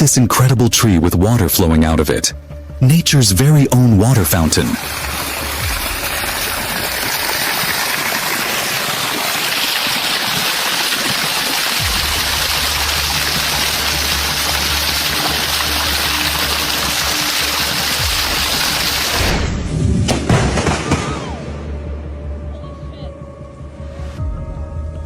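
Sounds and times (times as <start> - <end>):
water gushing and splashing: 4.0 - 19.6.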